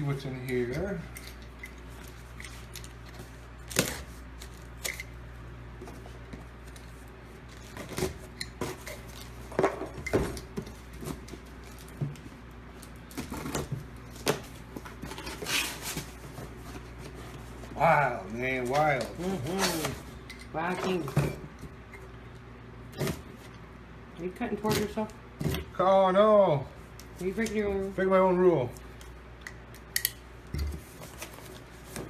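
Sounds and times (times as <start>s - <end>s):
low steady hum: 0.0s - 32.0s
cardboard packaging being handled: 5.7s - 20.2s.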